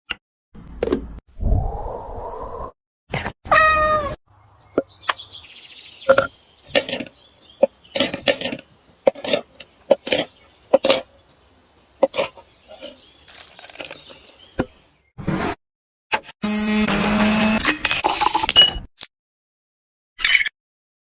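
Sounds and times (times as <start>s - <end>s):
cat meowing: 3.5s - 4.2s.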